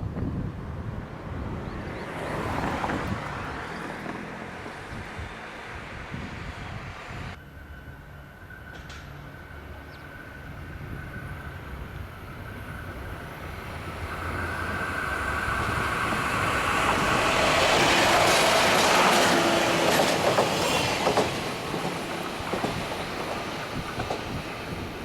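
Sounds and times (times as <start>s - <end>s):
train passing: 0.1s - 25.0s
wheels clacking over rail joints: 13.8s - 25.0s.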